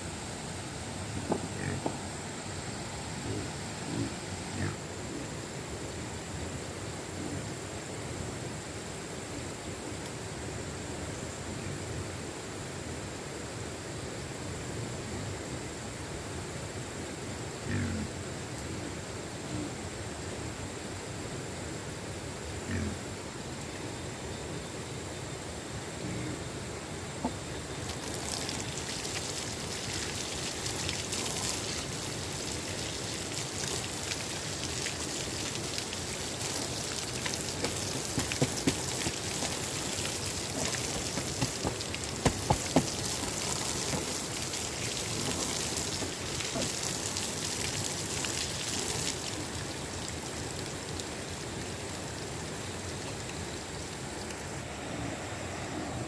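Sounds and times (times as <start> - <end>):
falling water hissing: 26.6 - 56.0.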